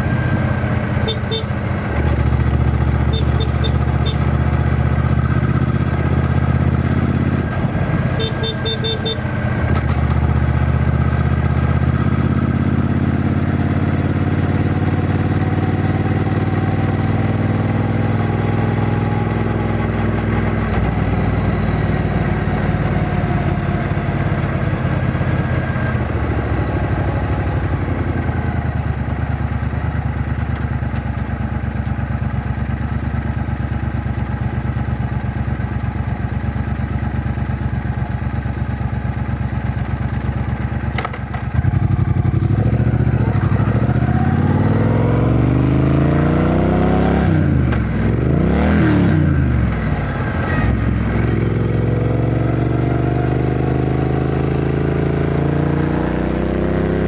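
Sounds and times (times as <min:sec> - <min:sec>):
motorcycle engine running: 0:00.0 - 0:57.0
short beeps: 0:08.2 - 0:09.3.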